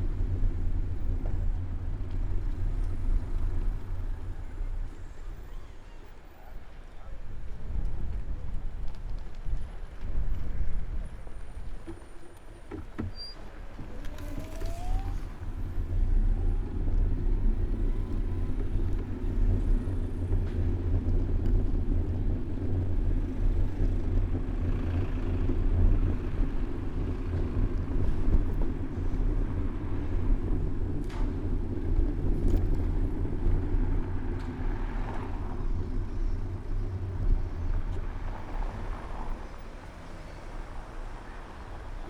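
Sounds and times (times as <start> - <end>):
low engine rumble: 0.0 - 42.0
rising engine note: 13.9 - 16.7.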